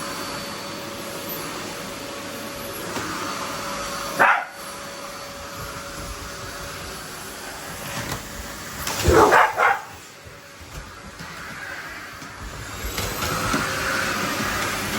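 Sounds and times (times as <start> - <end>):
vacuum cleaner hissing: 0.0 - 14.9
dog barking: 4.2 - 4.6, 9.0 - 10.0.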